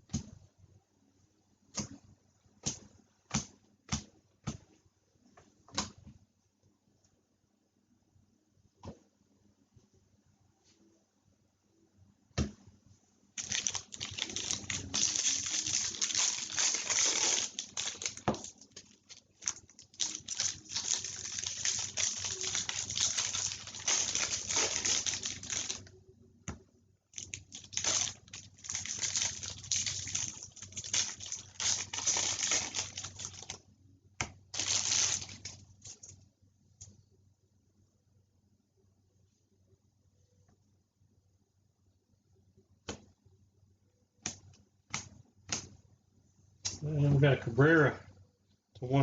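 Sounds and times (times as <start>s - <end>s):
wrappers crinkling: 13.4s - 25.9s, 27.2s - 33.6s, 34.5s - 36.1s.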